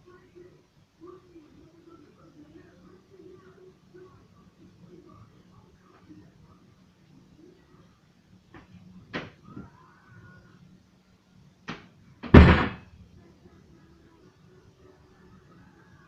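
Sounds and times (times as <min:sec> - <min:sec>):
knocks: 0:11.7 - 0:12.8
loud thump: 0:12.2 - 0:12.8.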